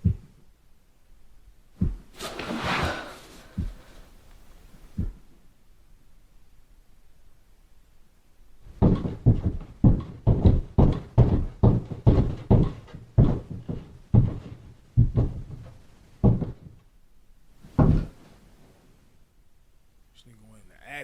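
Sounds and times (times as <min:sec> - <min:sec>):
heavy thuds: 0:01.7 - 0:05.3, 0:08.6 - 0:16.8, 0:17.6 - 0:18.3.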